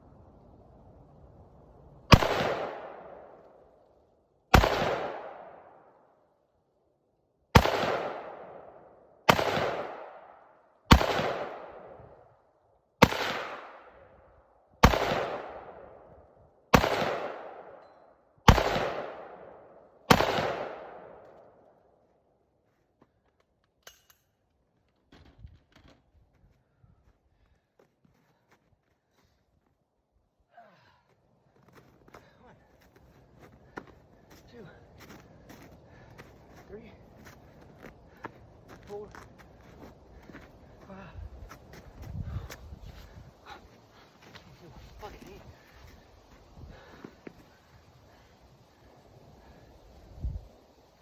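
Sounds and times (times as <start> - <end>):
rifle shots echoing: 2.1 - 3.6, 4.5 - 6.0, 7.5 - 12.2, 13.0 - 14.2, 14.8 - 16.1, 16.7 - 17.8, 18.5 - 21.6.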